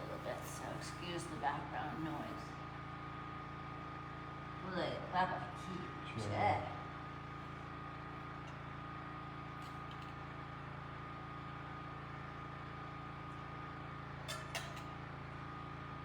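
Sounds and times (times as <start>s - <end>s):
generator engine humming: 0.0s - 9.6s.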